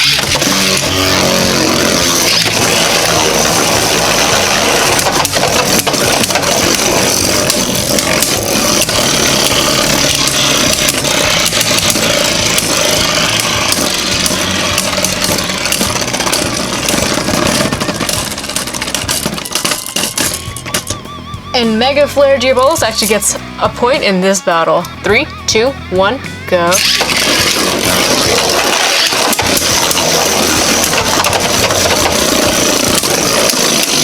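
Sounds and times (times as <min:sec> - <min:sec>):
spinning tops colliding clicks: 0:00.0 - 0:21.2, 0:26.7 - 0:34.0
spinning tops whirring and grinding: 0:00.0 - 0:34.0.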